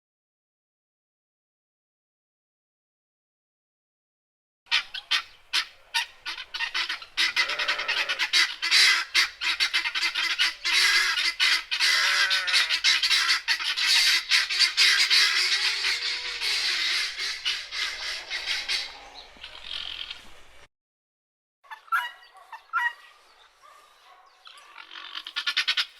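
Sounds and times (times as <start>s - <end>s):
guinea fowl chattering calls: 4.7s - 20.5s, 21.7s - 25.9s.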